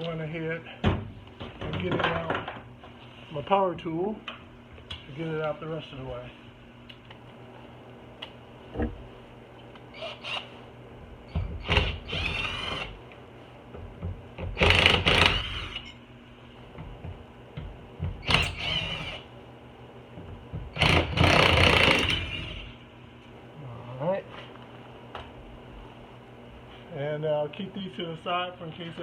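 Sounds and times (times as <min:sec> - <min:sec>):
power tool motor whirring: 0:09.9 - 0:10.5, 0:11.4 - 0:13.0, 0:14.6 - 0:15.9, 0:18.2 - 0:19.3, 0:20.8 - 0:22.7.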